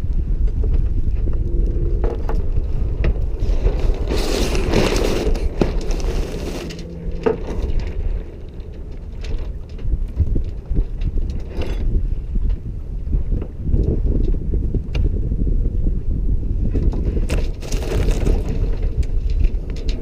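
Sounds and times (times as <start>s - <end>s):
wind buffeting microphone: 0.0s - 20.0s
rasping rush of sails and sheets: 0.3s - 20.0s
clicks and knocks from lines and winch: 16.7s - 20.0s.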